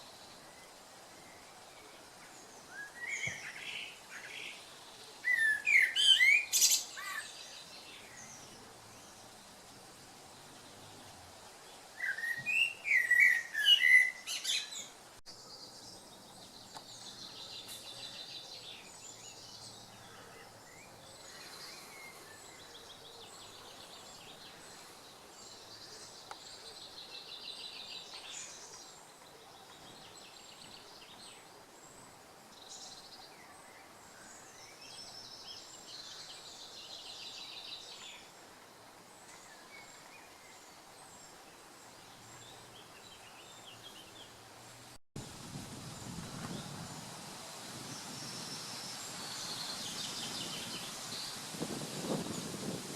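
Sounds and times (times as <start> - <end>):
faint background hiss: 0.0 - 52.9
songbirds chirping: 0.0 - 52.9
trilled bird song: 2.3 - 9.3, 12.0 - 20.1.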